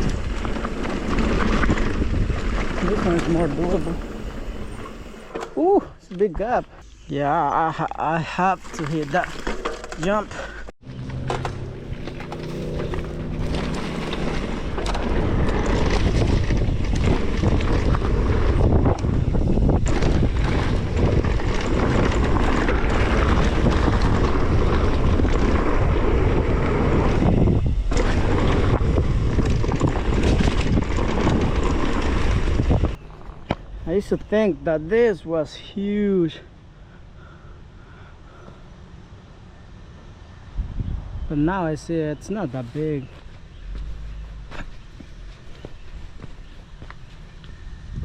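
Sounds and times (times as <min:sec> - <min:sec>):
wind buffeting microphone: 0:00.0 - 0:05.3, 0:11.9 - 0:35.2, 0:40.4 - 0:48.0
tyres rumbling on dirt trail: 0:00.0 - 0:38.7, 0:41.2 - 0:48.0.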